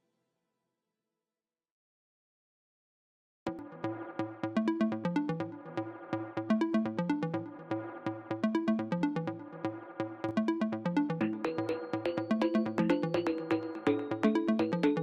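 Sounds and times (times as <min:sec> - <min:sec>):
electronic music with bass line: 0:03.5 - 0:15.0.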